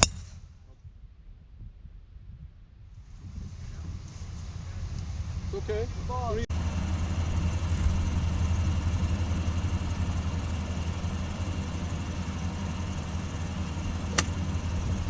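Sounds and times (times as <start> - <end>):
golf club striking ball: 0.0 - 0.4, 11.3 - 14.8
steady low rumble: 0.0 - 15.0.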